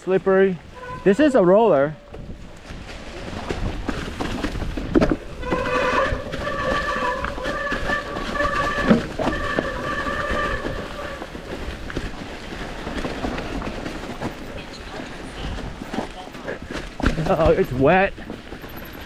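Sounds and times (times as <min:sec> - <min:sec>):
tyres rumbling on rock and dirt: 0:00.7 - 0:19.0
bike thumping on rocks: 0:02.2 - 0:14.6, 0:15.4 - 0:19.0
bike disc brakes squealing: 0:05.4 - 0:11.5.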